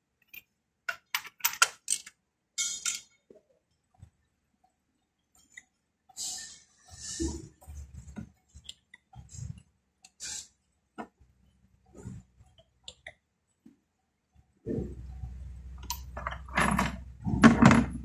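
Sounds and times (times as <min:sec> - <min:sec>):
steady low hum: 0:14.6 - 0:18.0.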